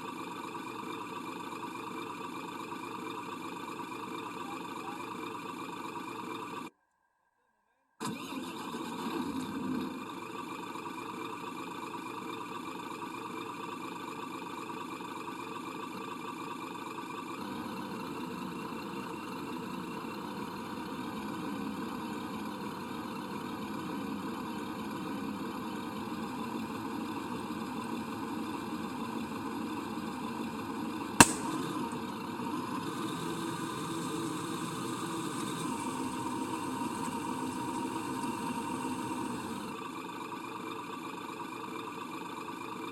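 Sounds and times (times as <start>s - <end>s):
truck engine running: 0.0s - 6.7s, 9.4s - 42.9s
sharp crack: 31.2s - 32.2s.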